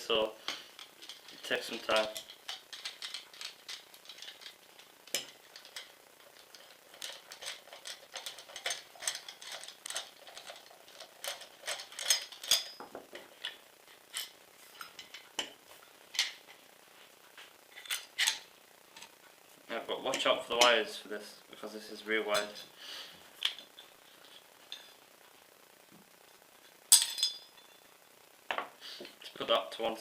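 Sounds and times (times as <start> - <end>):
screwdriver clicks and metal scrapes: 0.5 - 12.8, 17.8 - 18.4.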